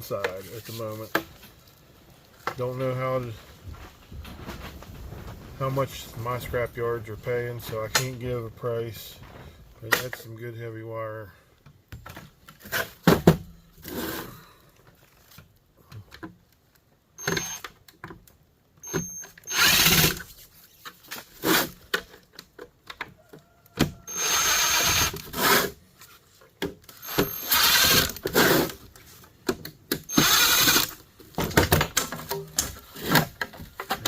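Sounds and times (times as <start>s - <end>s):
power drill running: 17.2s - 17.6s, 18.8s - 20.2s, 24.1s - 25.5s, 27.0s - 28.5s, 30.1s - 31.0s.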